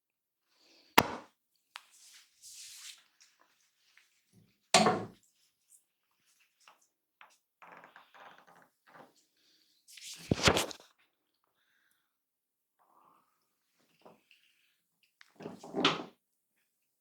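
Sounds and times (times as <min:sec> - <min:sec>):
hands slapping body: 0:01.0 - 0:01.3.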